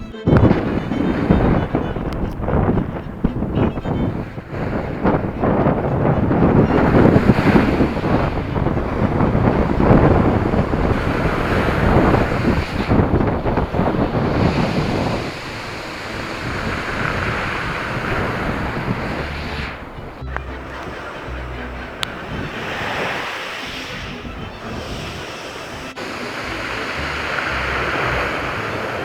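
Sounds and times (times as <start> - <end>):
storm waves breaking on shore: 0.0 - 29.0
wind buffeting microphone: 0.0 - 29.0.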